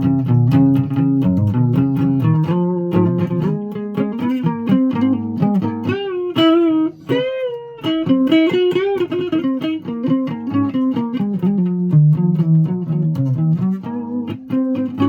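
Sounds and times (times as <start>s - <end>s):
guitar plucked notes: 0.0s - 15.0s.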